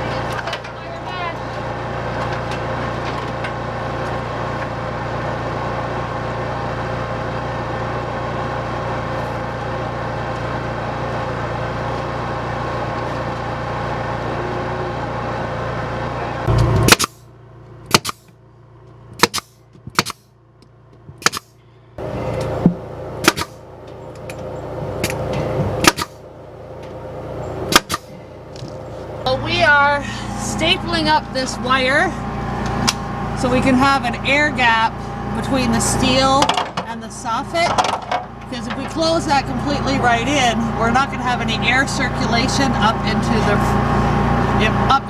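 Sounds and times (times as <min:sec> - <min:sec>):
steady mechanical hum: 0:00.0 - 0:45.0
staple gun firing: 0:16.9 - 0:17.2, 0:17.9 - 0:18.3, 0:19.2 - 0:20.3, 0:21.2 - 0:21.5, 0:23.2 - 0:23.6, 0:25.8 - 0:26.2, 0:27.7 - 0:28.1.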